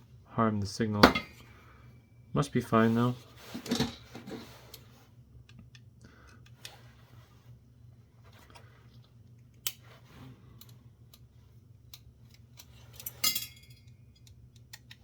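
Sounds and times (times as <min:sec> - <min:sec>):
metal parts clicking: 0:11.9 - 0:15.0.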